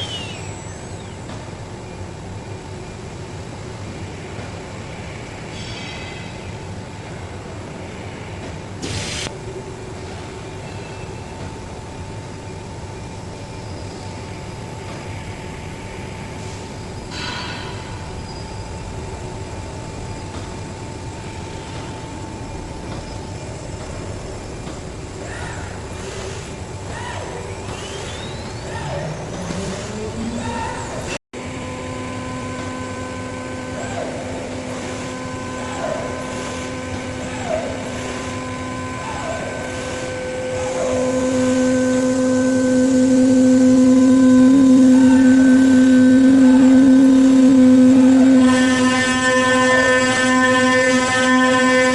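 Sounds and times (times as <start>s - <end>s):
cnc machine whining: 0.0s - 51.9s.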